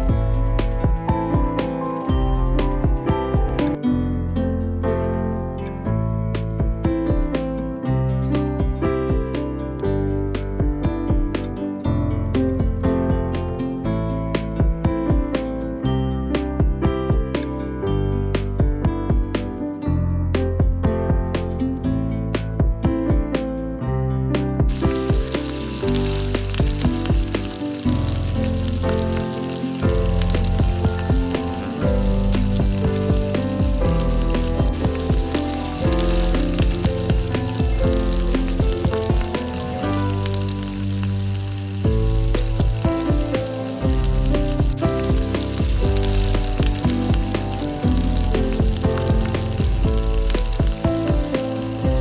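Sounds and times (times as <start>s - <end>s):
background music with held notes: 0.0s - 52.0s
oil sizzling in a pan: 24.7s - 52.0s.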